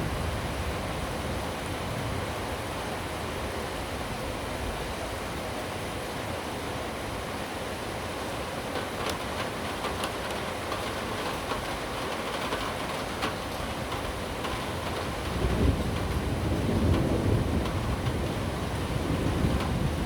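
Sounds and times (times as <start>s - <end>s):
steady rain: 0.0s - 20.0s
raindrops ticking close by: 8.1s - 20.0s.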